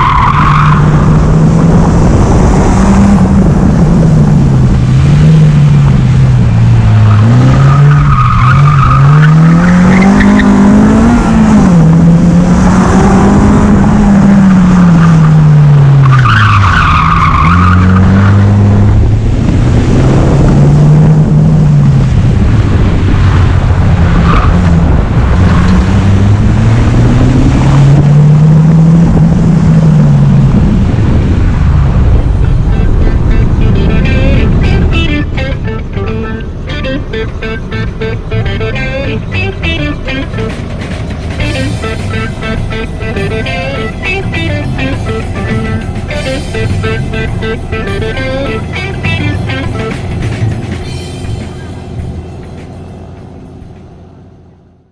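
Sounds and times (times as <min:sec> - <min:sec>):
car engine revving: 0:00.0 - 0:54.9
tyres squealing: 0:32.5 - 0:51.8.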